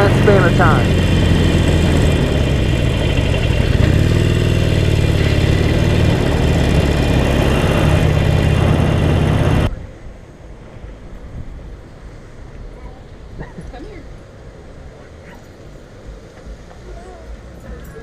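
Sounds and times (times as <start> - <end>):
motorcycle engine running: 0.0 - 9.7.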